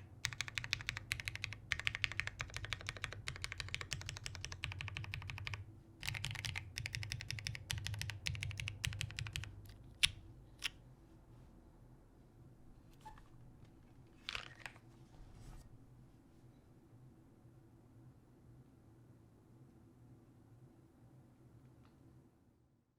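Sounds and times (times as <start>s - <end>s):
mechanical keyboard rapid keystrokes: 0.0s - 10.7s.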